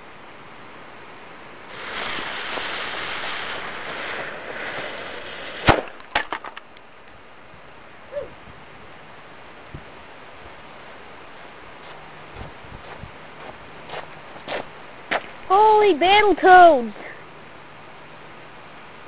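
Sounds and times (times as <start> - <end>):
firecracker fuse hissing: 1.7 - 6.5
firecracker bang: 1.8 - 6.2
small cracks: 5.6 - 7.2.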